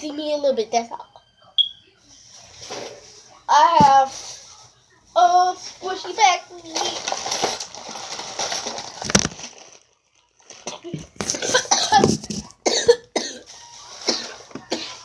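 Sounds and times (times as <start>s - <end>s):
girl coughing: 10.7s - 15.0s.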